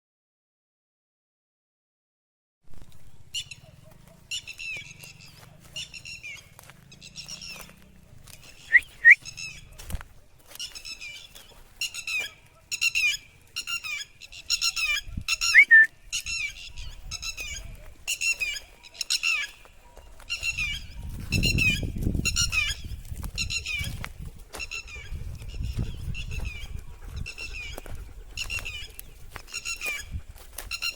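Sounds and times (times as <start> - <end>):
bird calling harshly: 8.5 - 9.7, 10.6 - 16.6.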